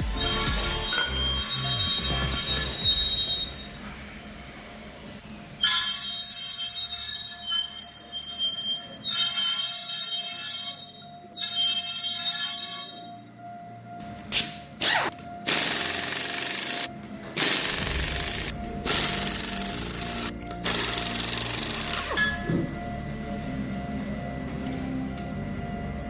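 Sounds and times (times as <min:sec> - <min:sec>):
background music: 0:00.0 - 0:06.4, 0:07.1 - 0:26.0
pneumatic impact wrench bursts: 0:14.3 - 0:22.6.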